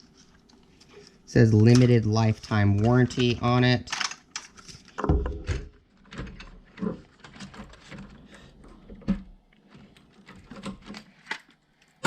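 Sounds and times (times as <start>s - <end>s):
plastic and cardboard rustling: 0.0s - 12.0s.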